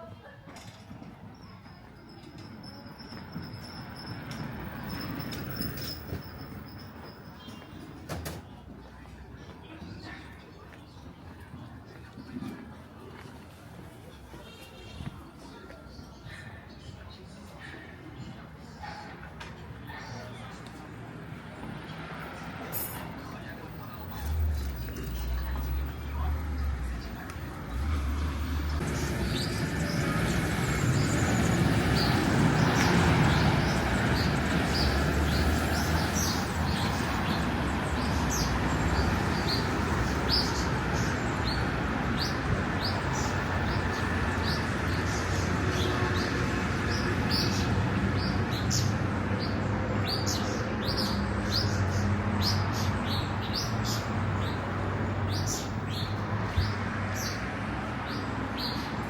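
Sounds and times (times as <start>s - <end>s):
small birds chirping: 23.4s - 59.0s.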